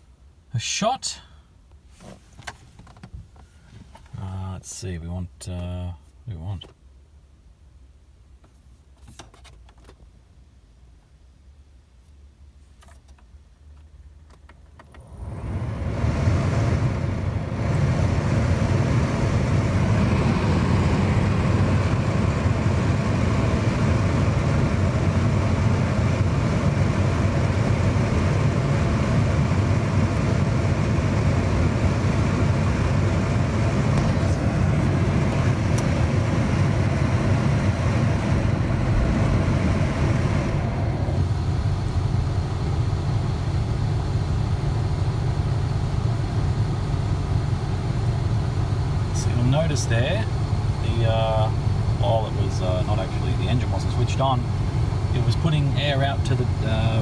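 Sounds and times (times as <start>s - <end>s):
loud rushing noise in car: 15.0s - 57.0s.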